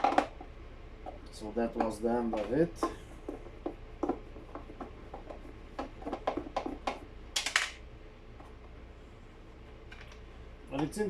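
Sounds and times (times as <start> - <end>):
plastic parts clicking and knocking: 0.0 - 0.4, 1.0 - 7.8.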